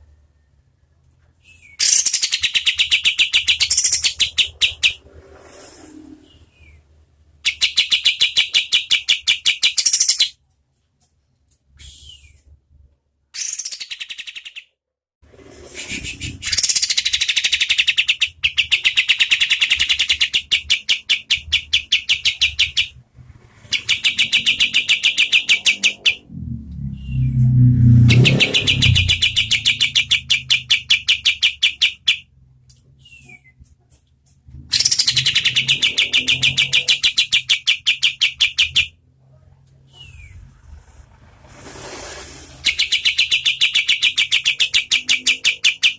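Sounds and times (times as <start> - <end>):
bird singing rapid trill: 23.7 - 26.3, 27.9 - 32.3, 34.7 - 38.9, 42.6 - 45.9
low rumble: 26.2 - 29.8, 39.2 - 42.7.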